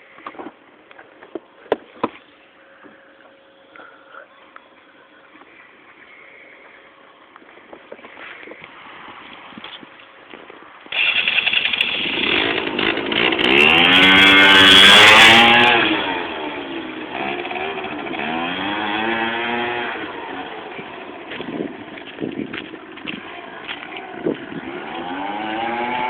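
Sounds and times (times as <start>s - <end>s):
scooter engine revving: 10.9s - 26.0s.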